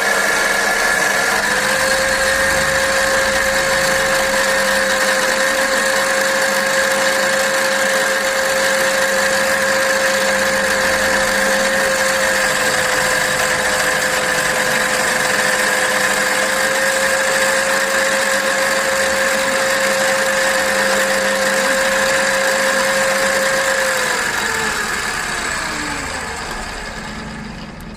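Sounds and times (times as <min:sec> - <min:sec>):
lathe motor whining: 0:00.0 - 0:27.9.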